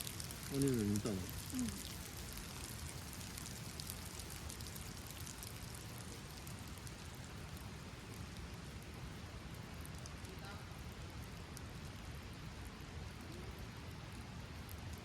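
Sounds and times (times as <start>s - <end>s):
rain drops ticking: 0.0s - 15.0s
steady rain falling: 0.0s - 15.0s.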